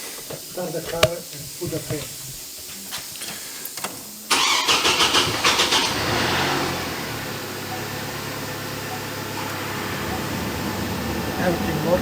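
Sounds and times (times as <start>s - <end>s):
car engine idling: 4.3s - 12.0s.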